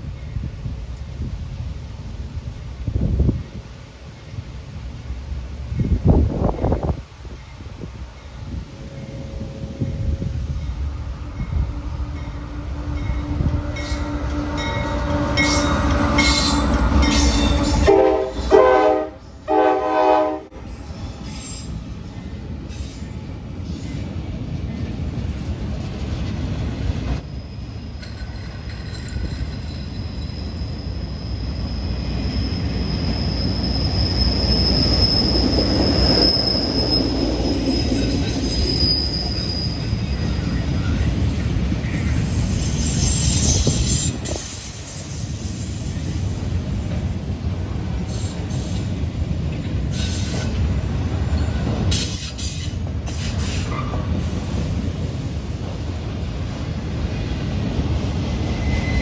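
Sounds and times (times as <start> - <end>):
train wheels rumbling on rails: 0.0 - 59.0
high wheel squeal: 27.2 - 46.6, 47.2 - 59.0.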